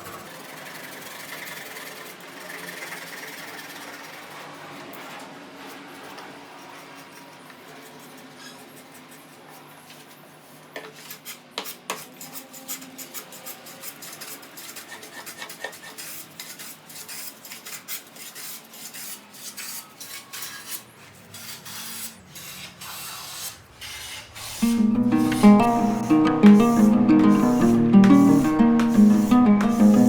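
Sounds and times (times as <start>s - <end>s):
scraping on wood: 10.8s - 30.0s.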